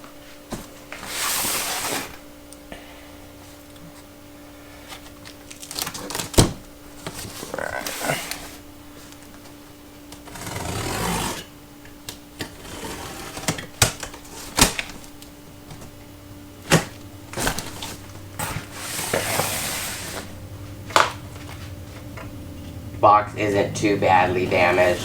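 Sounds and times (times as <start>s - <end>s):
cardboard scraping and rustling: 0.2s - 2.3s, 3.6s - 11.6s, 12.4s - 16.0s, 16.6s - 22.1s.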